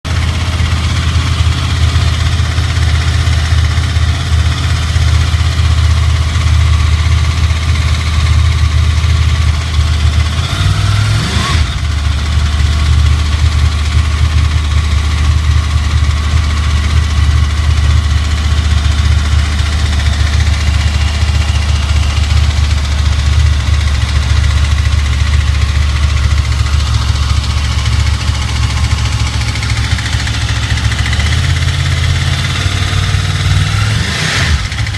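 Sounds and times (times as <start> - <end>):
motorcycle engine idling: 0.1 - 34.9
engine revving: 10.1 - 14.0, 27.4 - 34.9.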